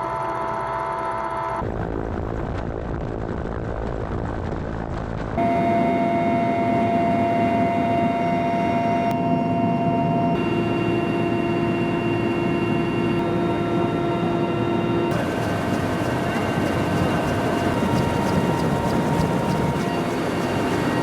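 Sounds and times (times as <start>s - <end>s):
helicopter engine and rotor: 5.4s - 21.0s
steady whining tones: 5.4s - 21.0s.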